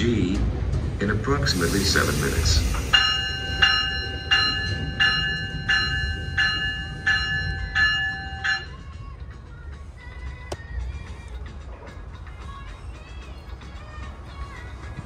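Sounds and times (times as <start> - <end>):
train rumbling: 0.0 - 15.0
locomotive bell ringing: 2.9 - 9.1.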